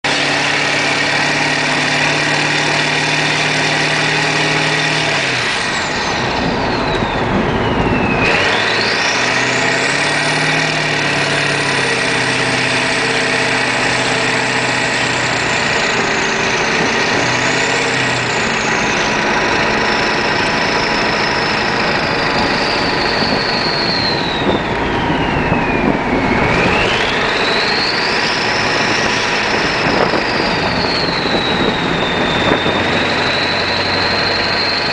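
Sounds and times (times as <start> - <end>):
diesel truck engine running: 0.0 - 34.9
turbo whistle: 2.0 - 34.9.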